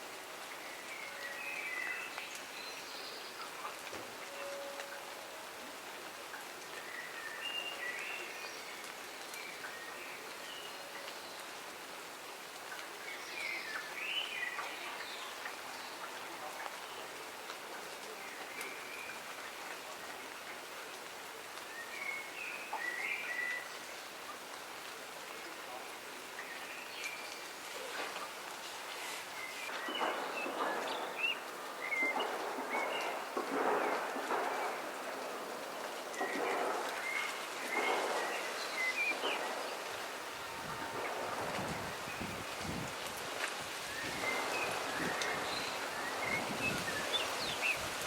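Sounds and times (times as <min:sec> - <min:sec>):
steady rain falling: 0:00.0 - 0:48.0
birds chirping: 0:29.3 - 0:35.1, 0:36.1 - 0:42.5.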